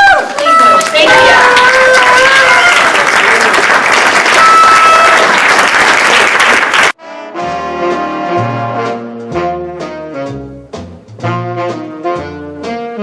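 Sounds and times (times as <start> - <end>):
audience applauding: 0.0 - 7.0
brass-led jazz music: 7.0 - 13.0.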